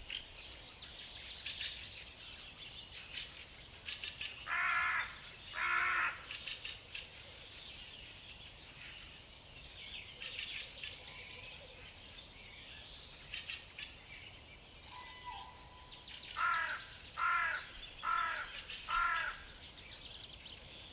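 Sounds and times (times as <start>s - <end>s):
small birds chirping and trilling: 0.0s - 20.9s
large bird harsh calls: 4.4s - 6.3s, 16.3s - 19.6s.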